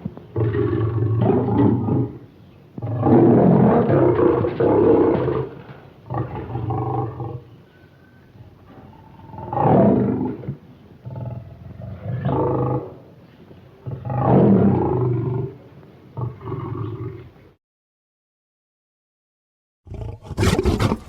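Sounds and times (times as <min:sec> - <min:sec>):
monster growling and roaring: 0:19.9 - 0:21.0.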